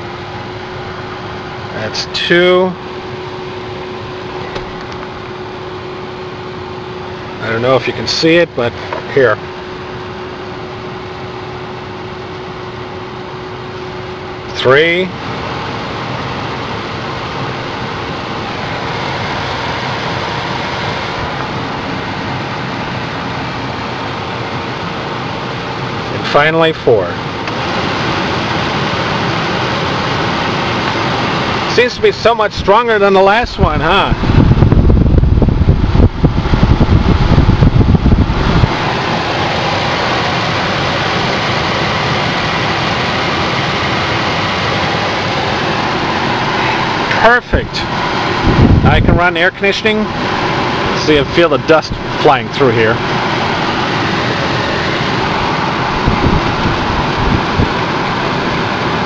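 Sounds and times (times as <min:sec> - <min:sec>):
blower fan air rushing: 0:00.0 - 0:59.0
wind buffeting microphone: 0:33.6 - 0:39.1, 0:48.1 - 0:49.2, 0:55.0 - 0:58.2.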